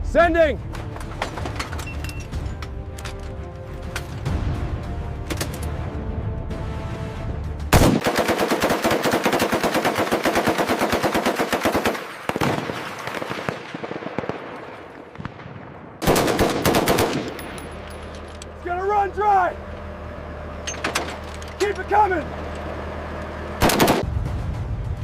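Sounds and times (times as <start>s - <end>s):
machine gun firing bursts: 7.7s - 14.9s, 16.0s - 17.6s, 23.6s - 24.1s
scattered gunshot reports: 23.6s - 24.1s.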